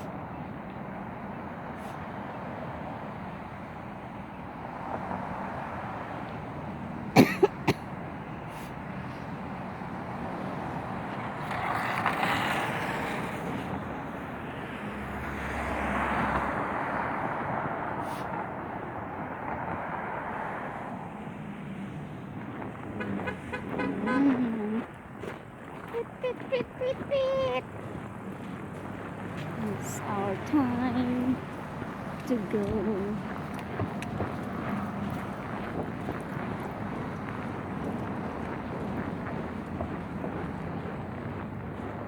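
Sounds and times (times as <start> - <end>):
road traffic noise: 0.0 - 42.0
vehicles passing: 0.0 - 42.0.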